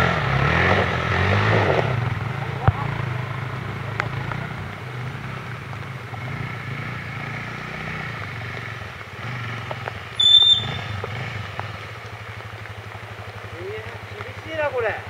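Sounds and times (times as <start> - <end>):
motorcycle engine at low revs: 0.0 - 15.0
high-pitched squeal: 10.2 - 11.0.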